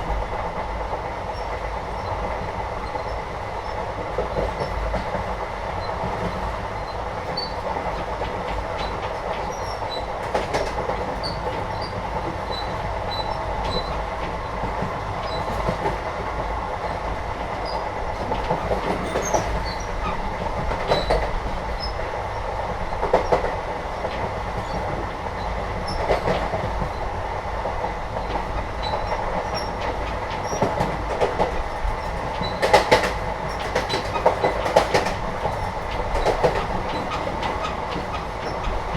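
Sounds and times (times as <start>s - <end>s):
train wheels rumbling on track: 0.0s - 38.9s
clacks and knocks: 7.3s - 21.9s, 28.3s - 38.9s.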